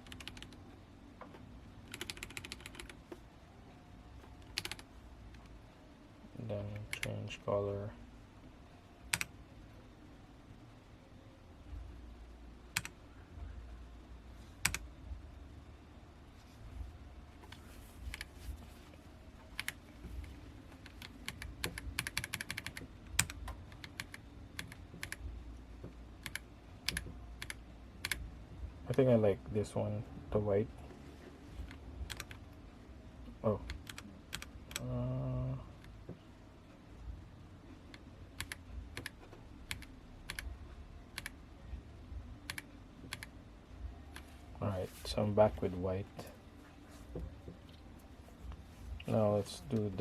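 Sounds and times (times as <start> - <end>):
mechanical keyboard keystrokes: 1.9 - 3.0, 4.5 - 4.9, 20.8 - 25.2.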